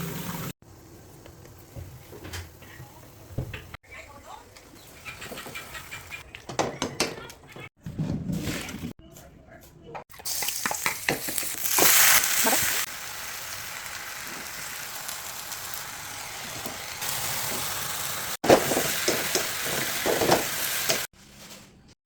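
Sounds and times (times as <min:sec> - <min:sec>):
leaves sizzling in hot oil: 0:10.3 - 0:21.1.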